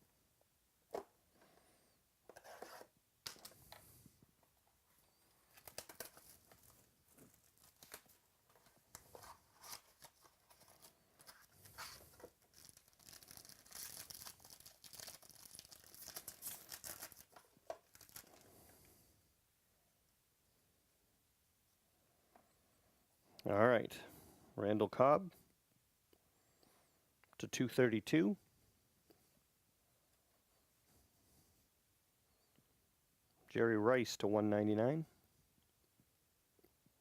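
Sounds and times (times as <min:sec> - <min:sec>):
wrapper tearing and crinkling: 0:05.5 - 0:08.2, 0:09.2 - 0:18.4
cards clicking and rustling: 0:05.5 - 0:18.4.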